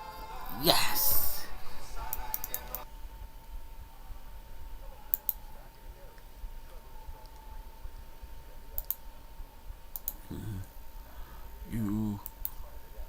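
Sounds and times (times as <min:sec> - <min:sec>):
faint steady tone: 0:00.0 - 0:13.0
low steady hum: 0:00.0 - 0:13.0
sharp clicks in pairs: 0:08.8 - 0:09.0, 0:09.9 - 0:10.2, 0:12.2 - 0:12.6.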